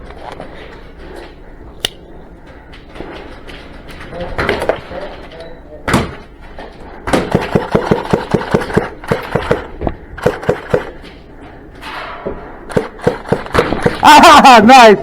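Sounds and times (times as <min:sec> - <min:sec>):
airsoft gunfire: 0:07.1 - 0:11.0, 0:12.7 - 0:14.5.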